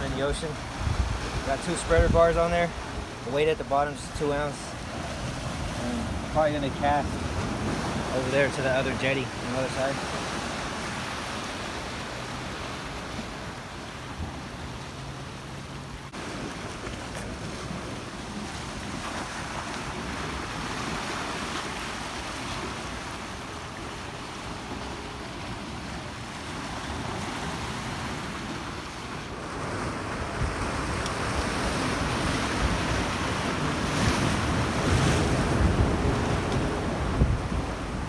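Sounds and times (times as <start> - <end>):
wind buffeting microphone: 0.0 - 3.3, 29.3 - 38.0
ocean surf washing against jetty: 0.0 - 38.0.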